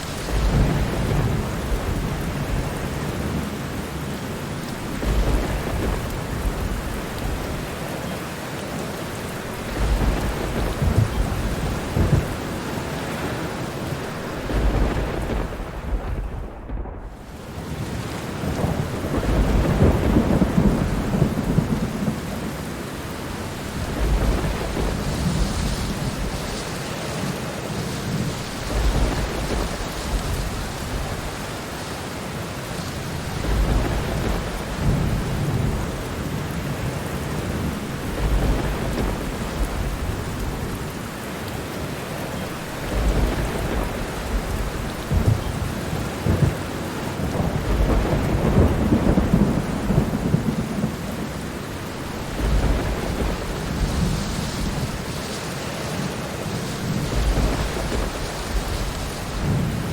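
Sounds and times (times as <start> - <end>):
rolling thunder: 0.0 - 8.2, 9.2 - 31.8, 32.7 - 41.1, 42.4 - 59.9
steady rain: 0.0 - 59.9.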